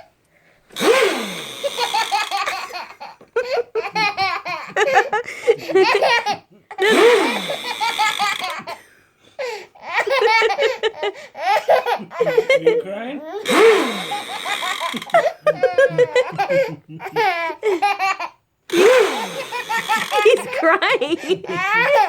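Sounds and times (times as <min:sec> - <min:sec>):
baby boy belly laughing: 0:01.7 - 0:06.9, 0:07.6 - 0:13.5, 0:14.1 - 0:18.4, 0:19.3 - 0:22.0.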